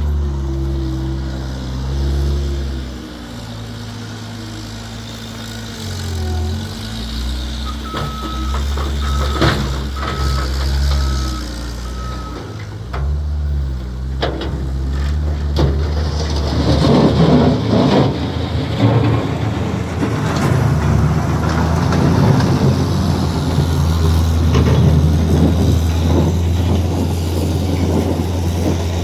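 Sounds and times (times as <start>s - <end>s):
skid steer engine running: 0.0s - 29.0s
rough scraping: 14.6s - 29.0s.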